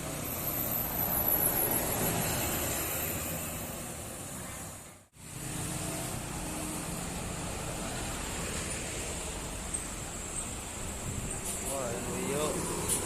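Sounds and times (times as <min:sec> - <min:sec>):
road traffic passing: 0:00.0 - 0:13.0.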